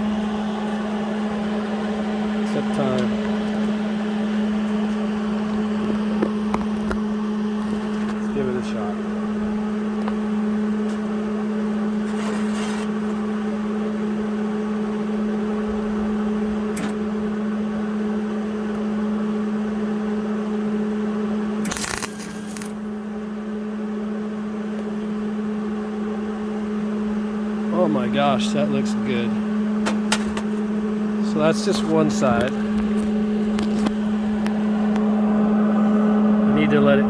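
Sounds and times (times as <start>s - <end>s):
constant hum: 0.0s - 37.0s
welder arc crackling: 21.7s - 23.1s.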